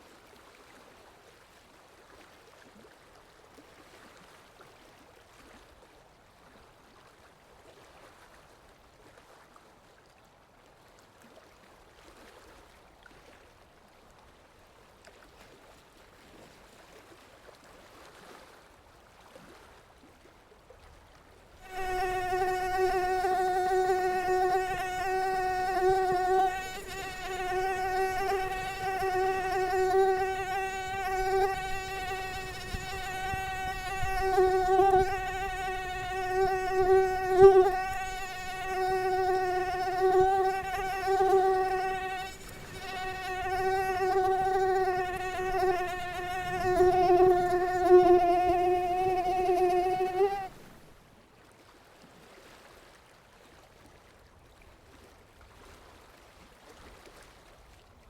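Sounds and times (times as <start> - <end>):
mosquito whine: 21.6 - 50.6
faint background hiss: 21.6 - 51.2.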